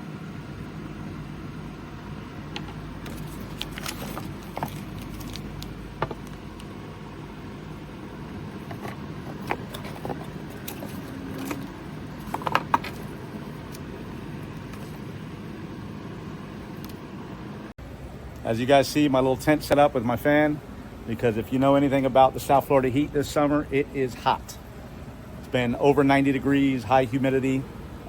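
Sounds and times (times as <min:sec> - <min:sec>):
electric fan humming: 0:00.0 - 0:28.0
clicks and knocks of handling: 0:02.5 - 0:06.7, 0:08.6 - 0:13.8.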